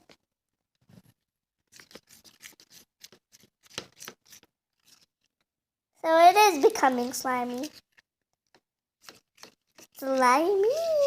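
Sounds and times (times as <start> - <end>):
spoon scraping slime in a bowl: 1.6 - 5.5, 6.6 - 11.0.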